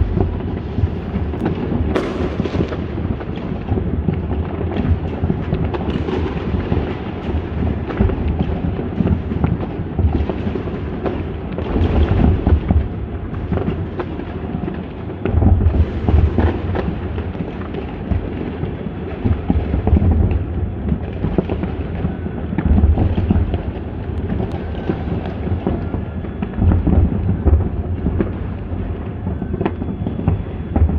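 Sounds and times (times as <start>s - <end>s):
fireworks booming: 0.0s - 16.9s, 22.6s - 30.9s
fireworks crackling: 0.7s - 7.9s, 22.8s - 27.3s.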